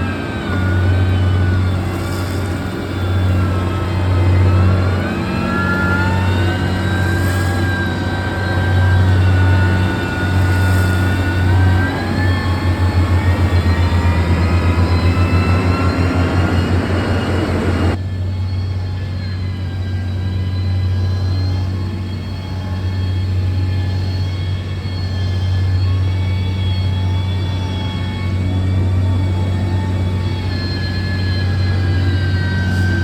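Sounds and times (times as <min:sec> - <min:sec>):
diesel machine engine under load: 0:00.0 - 0:18.0
rising and falling whine: 0:00.0 - 0:33.0.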